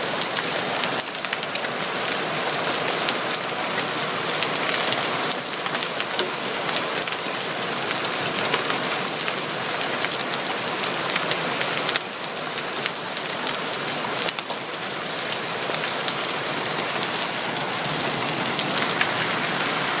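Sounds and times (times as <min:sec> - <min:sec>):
heavy rain hissing: 0:00.0 - 0:20.0
hailstones striking surfaces: 0:17.1 - 0:20.0.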